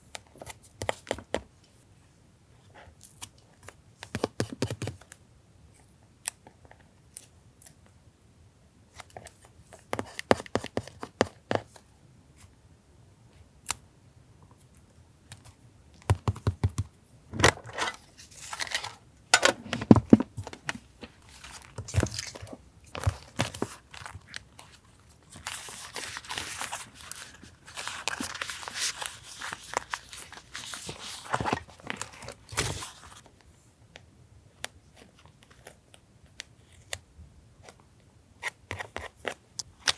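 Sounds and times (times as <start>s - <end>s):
paper tapping and rustling: 16.1s - 24.7s, 25.3s - 33.1s.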